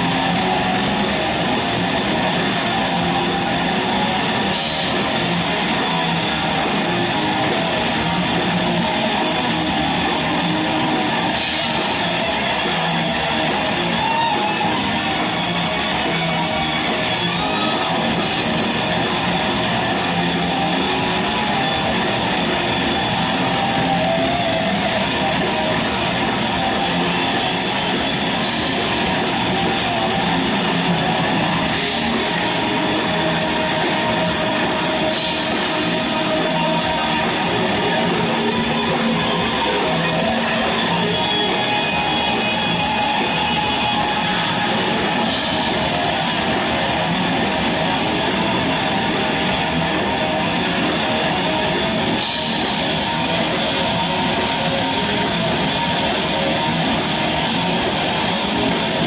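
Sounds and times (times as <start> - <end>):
distorted electric guitars: 0.0 - 59.0
drums: 0.0 - 59.0.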